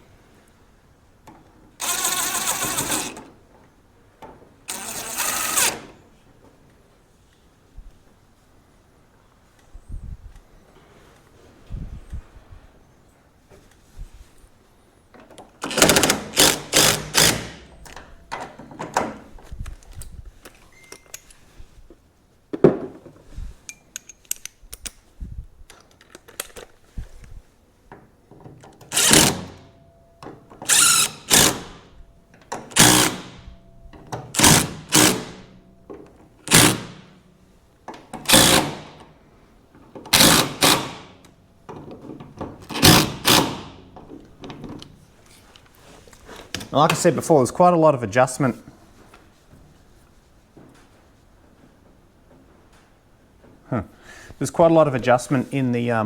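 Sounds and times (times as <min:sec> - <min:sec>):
power driver whirring: 0:01.8 - 0:03.2, 0:04.7 - 0:05.9, 0:15.7 - 0:17.7, 0:28.8 - 0:29.6, 0:30.6 - 0:31.8, 0:32.7 - 0:33.4, 0:34.4 - 0:35.5, 0:36.5 - 0:37.0, 0:38.2 - 0:39.0, 0:40.1 - 0:41.1.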